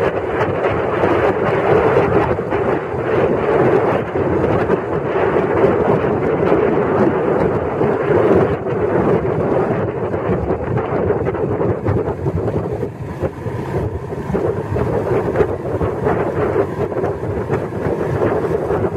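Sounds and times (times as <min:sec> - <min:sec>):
wind buffeting microphone: 0:00.0 - 0:18.9
road noise: 0:11.2 - 0:18.9
motorcycle engine: 0:11.8 - 0:18.9.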